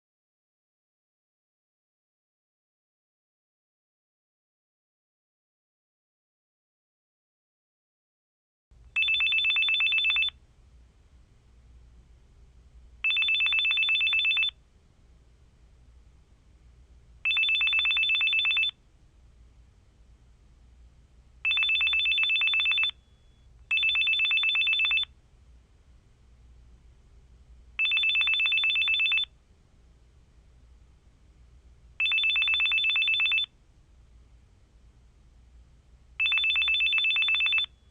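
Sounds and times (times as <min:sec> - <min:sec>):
faint low hum: 0:08.8 - 0:37.9
telephone ringing two-tone trill: 0:09.0 - 0:10.4, 0:13.0 - 0:14.6, 0:17.2 - 0:18.8, 0:21.4 - 0:25.1, 0:27.8 - 0:29.3, 0:32.0 - 0:33.5, 0:36.2 - 0:37.9.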